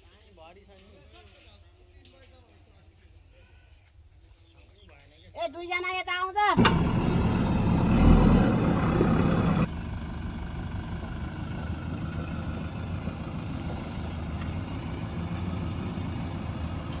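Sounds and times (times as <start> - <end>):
diesel engine running: 6.6 - 17.0.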